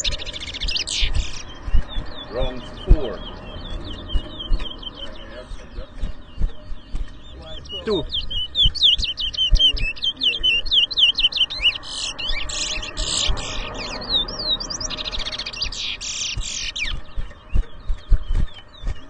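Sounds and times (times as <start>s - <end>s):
low thumps: 0.0s - 10.6s, 16.2s - 19.0s
finch singing: 0.0s - 19.0s.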